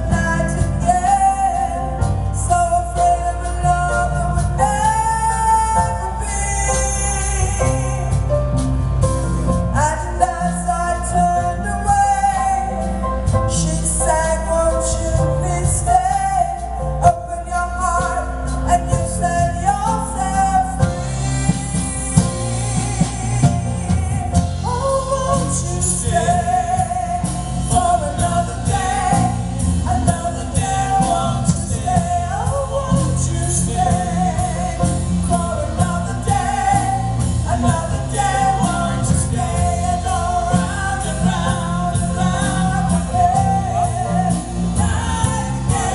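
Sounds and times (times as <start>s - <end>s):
woman singing: 0.0s - 8.2s, 9.8s - 12.9s, 13.5s - 45.9s
live band playing slow pop: 0.0s - 45.9s.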